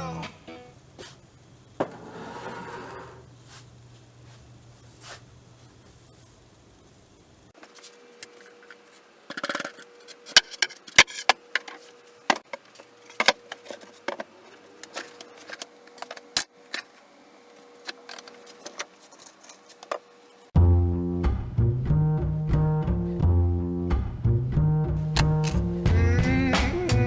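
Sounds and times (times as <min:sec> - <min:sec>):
wood and metal parts knocking: 0:07.6 - 0:17.0, 0:17.8 - 0:20.1, 0:25.0 - 0:25.7.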